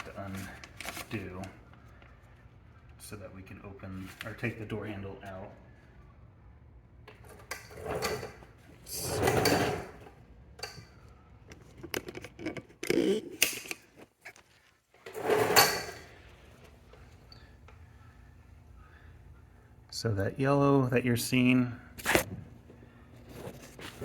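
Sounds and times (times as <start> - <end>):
plastic sheet crinkling and peeling: 0.0 - 1.9.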